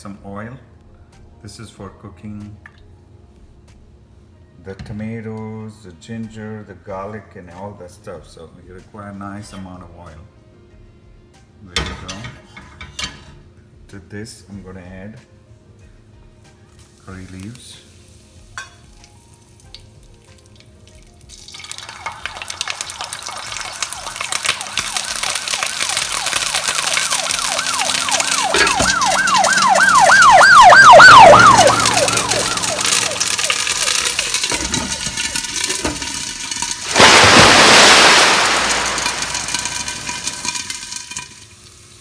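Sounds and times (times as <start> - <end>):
leaves crackling in hot oil: 16.7 - 42.0
loud sizzling: 21.7 - 42.0
high wavering whine: 24.1 - 35.2.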